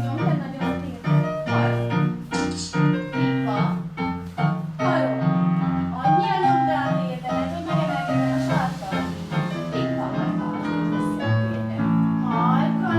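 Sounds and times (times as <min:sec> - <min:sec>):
piano music: 0:00.0 - 0:12.9.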